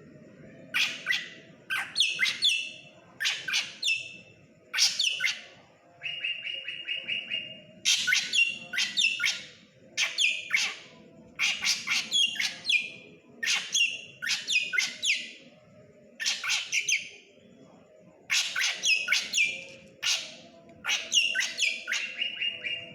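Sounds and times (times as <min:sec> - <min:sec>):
bird trill: 0:00.6 - 0:15.5, 0:16.2 - 0:17.2, 0:18.3 - 0:22.9
bird song with sharp downward notes: 0:20.9 - 0:22.9.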